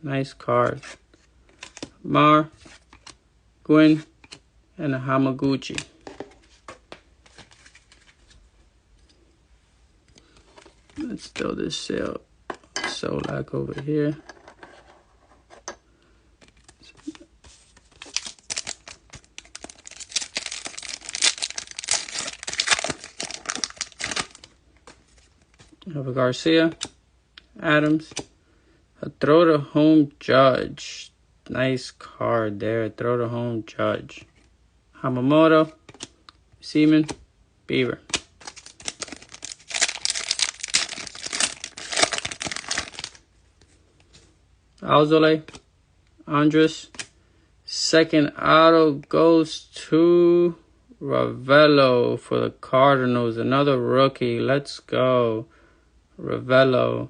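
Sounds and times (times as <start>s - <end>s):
card pack wrapper tearing: 17.8s - 24.5s, 38.1s - 43.2s.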